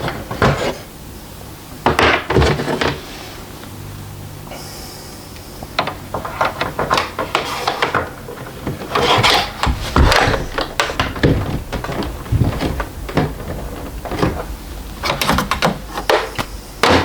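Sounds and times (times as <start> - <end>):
steady low hum: 0.0 - 17.0
hard parts clicking and scraping: 5.6 - 17.0.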